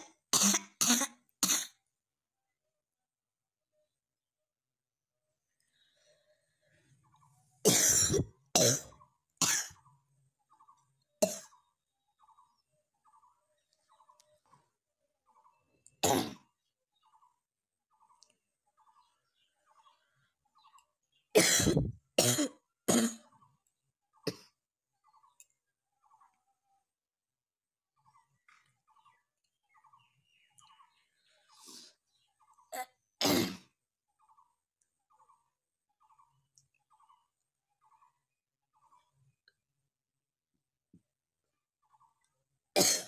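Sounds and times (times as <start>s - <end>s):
person coughing: 7.7s - 9.7s, 21.4s - 23.2s, 42.8s - 43.0s.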